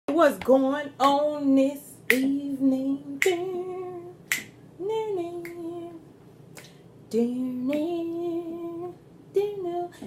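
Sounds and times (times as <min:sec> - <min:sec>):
woman singing: 0:00.1 - 0:06.1, 0:07.1 - 0:10.0
finger snaps: 0:02.1 - 0:02.4, 0:04.3 - 0:04.6, 0:05.4 - 0:05.6.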